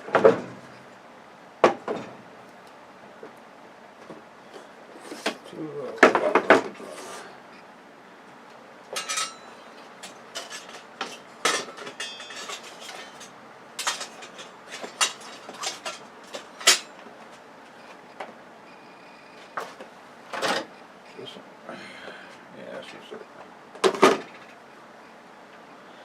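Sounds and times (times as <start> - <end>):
metal scraps clinking and clattering: 9.0 - 17.0.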